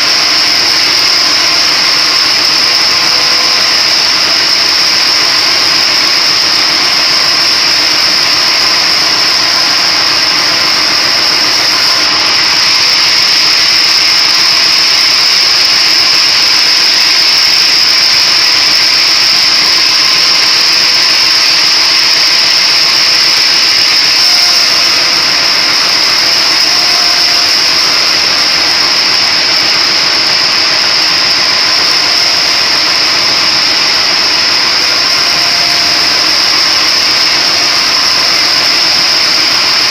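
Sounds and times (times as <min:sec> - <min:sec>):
splitting machine whining: 0:00.0 - 0:39.9.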